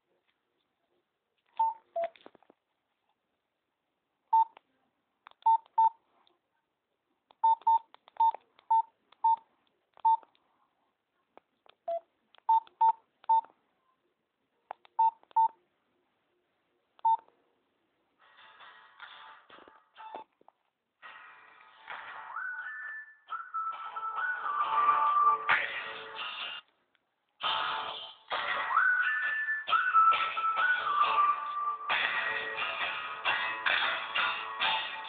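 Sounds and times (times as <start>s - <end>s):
phone keypad beeps: 4.4s - 4.6s, 5.4s - 6.0s, 7.4s - 9.4s, 11.9s - 13.5s, 15.0s - 15.6s, 17.0s - 17.2s.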